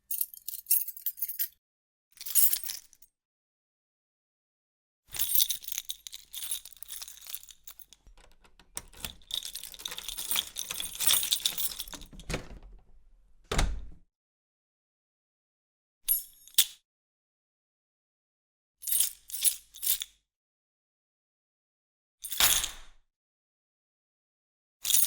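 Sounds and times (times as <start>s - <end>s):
metal keys jangling: 0.1s - 1.6s, 5.2s - 13.6s
dull thump of keys set down: 8.1s - 14.0s.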